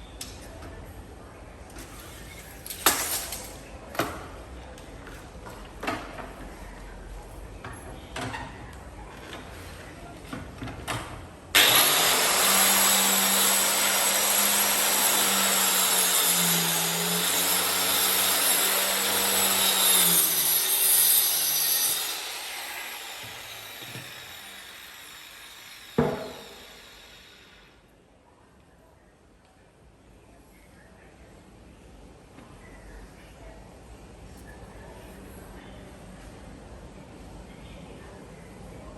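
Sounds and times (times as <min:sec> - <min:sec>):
electric power saw cutting wood: 0:11.6 - 0:27.7.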